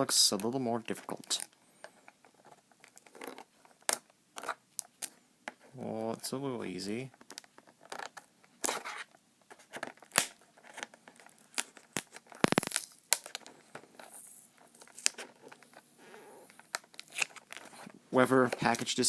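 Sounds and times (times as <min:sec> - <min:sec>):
tape tearing: 0:07.3 - 0:17.9.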